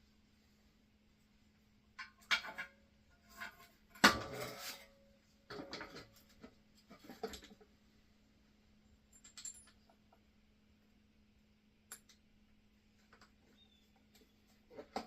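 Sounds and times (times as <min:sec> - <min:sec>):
metal tools clinking and clattering: 0:09.1 - 0:09.9.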